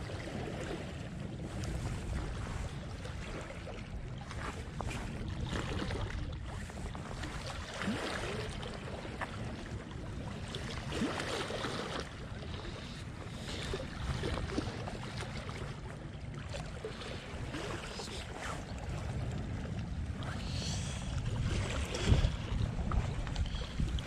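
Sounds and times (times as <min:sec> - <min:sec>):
wind buffeting microphone: 0:00.0 - 0:11.2, 0:16.9 - 0:24.0
seawater washing and lapping: 0:00.0 - 0:24.0.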